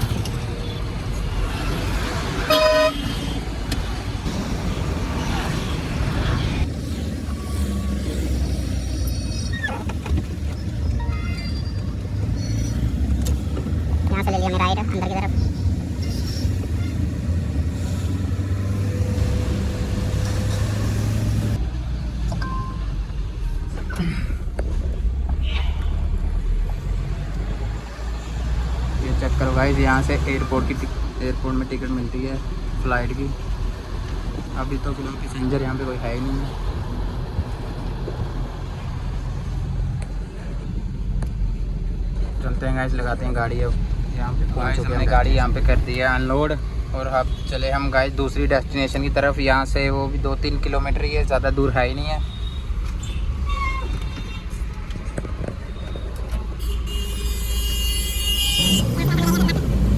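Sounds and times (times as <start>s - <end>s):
truck engine and road rumble: 0.0s - 59.9s
vehicle horn toot: 2.4s - 3.4s, 56.6s - 59.5s
short beep: 2.5s - 3.0s.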